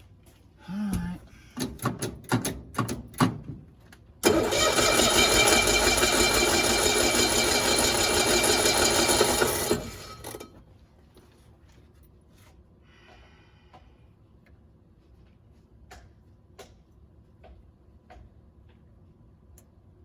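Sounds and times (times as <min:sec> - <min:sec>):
small engine starting and running: 0:04.2 - 0:10.6.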